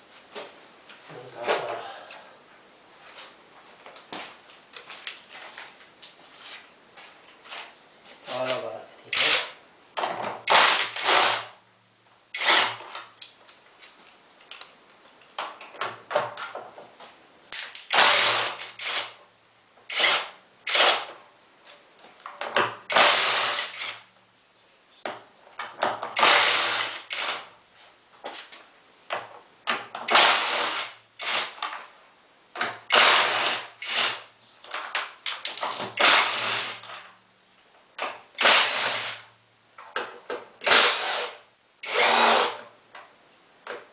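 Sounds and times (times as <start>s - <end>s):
cordless drill driving screws: 10.5s - 11.6s, 12.4s - 13.0s, 17.9s - 19.2s, 19.9s - 21.1s, 22.9s - 24.0s, 26.2s - 27.5s, 30.1s - 31.6s, 32.9s - 34.3s, 35.9s - 37.0s, 38.4s - 39.3s, 40.6s - 42.7s.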